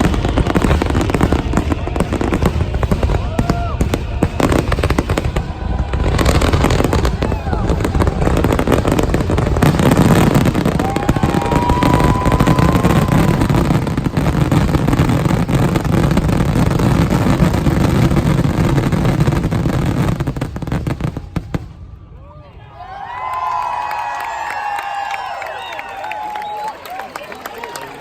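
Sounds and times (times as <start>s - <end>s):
firework whistle: 0.0s - 15.9s
fireworks bursts and crackles: 0.0s - 22.2s.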